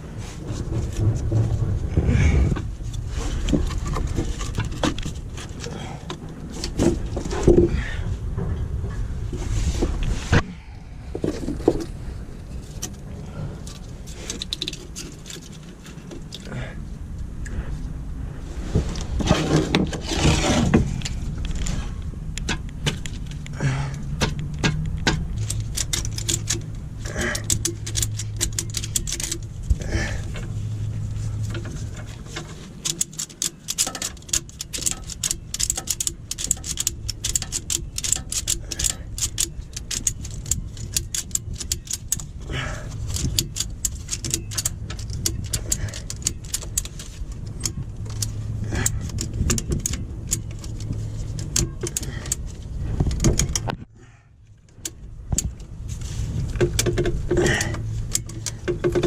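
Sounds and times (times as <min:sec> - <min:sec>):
low steady hum: 0:00.0 - 0:59.0
metal tools clinking: 0:24.2 - 0:53.7.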